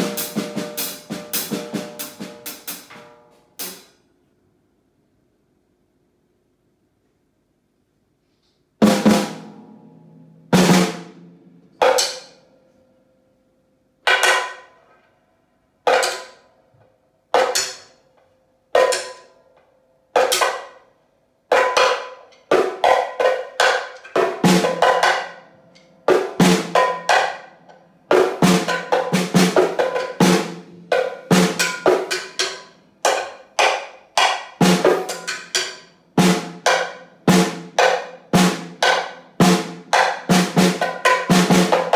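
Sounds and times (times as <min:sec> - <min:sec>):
drums being played: 0:00.0 - 0:03.9, 0:08.8 - 0:09.6, 0:10.6 - 0:11.2, 0:22.6 - 0:25.3, 0:26.1 - 0:27.2, 0:28.1 - 0:35.6, 0:36.2 - 0:41.9.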